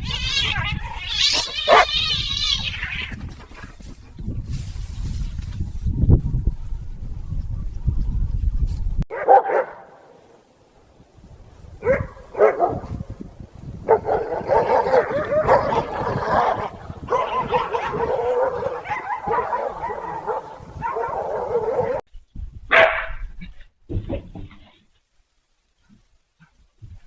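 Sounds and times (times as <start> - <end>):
dog barking and yelping: 0.4 - 2.2, 9.1 - 9.9, 11.8 - 12.9, 13.9 - 22.0, 22.7 - 23.1.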